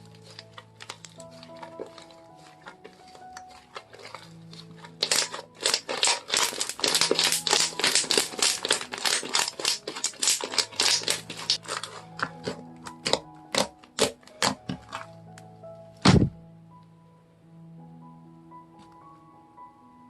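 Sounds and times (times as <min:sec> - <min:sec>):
slime crackling and popping: 0:00.0 - 0:15.1
soft background music: 0:00.0 - 0:20.0.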